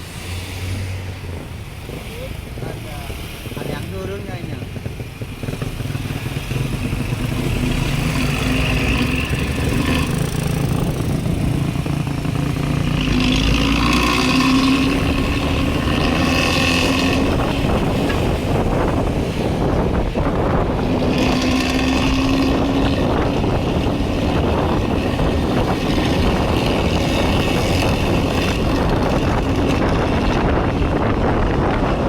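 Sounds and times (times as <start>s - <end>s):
bus engine growling exhaust: 6.1s - 32.0s.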